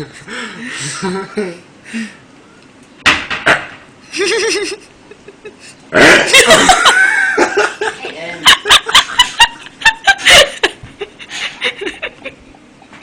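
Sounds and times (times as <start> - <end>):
person burping: 5.9 - 6.8.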